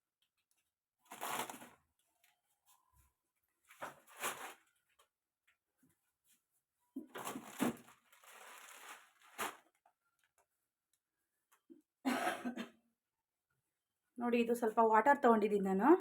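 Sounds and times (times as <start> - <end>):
objects rustling and knocking: 7.0 - 9.8.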